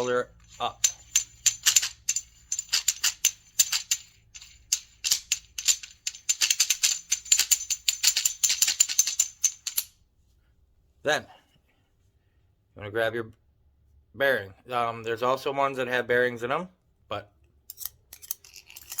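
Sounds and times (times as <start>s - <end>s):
metallic clicks and rattles: 0.0s - 9.9s, 17.7s - 19.0s.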